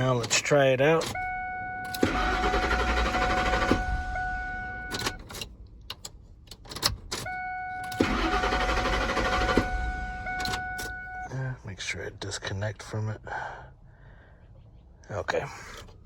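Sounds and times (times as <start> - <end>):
starter cranking engine: 2.0 - 3.9, 8.0 - 9.8.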